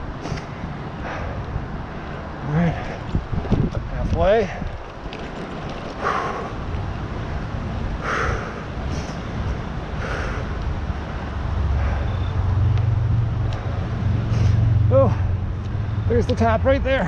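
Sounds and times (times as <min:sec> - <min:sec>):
wind on microphone: 0:00.0 - 0:16.0
bike rolling noise: 0:00.0 - 0:17.0
cyclist breathing hard: 0:00.1 - 0:03.4, 0:04.4 - 0:05.1, 0:05.9 - 0:15.8
low hum: 0:04.9 - 0:16.1.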